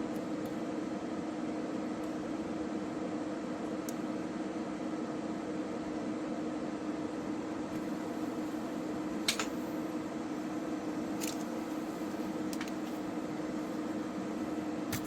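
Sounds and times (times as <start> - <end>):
steady machine hum: 0.0 - 15.0.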